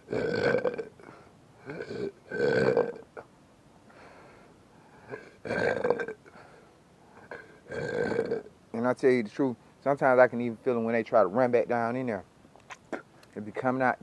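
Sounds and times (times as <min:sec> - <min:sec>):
person belching: 0:00.0 - 0:01.0, 0:01.6 - 0:03.3, 0:05.1 - 0:06.3, 0:07.2 - 0:08.5.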